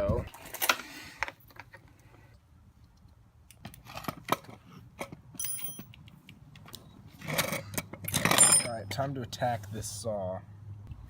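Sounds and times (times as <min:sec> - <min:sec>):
short ringing clink: 0:05.4 - 0:05.9, 0:08.3 - 0:08.8.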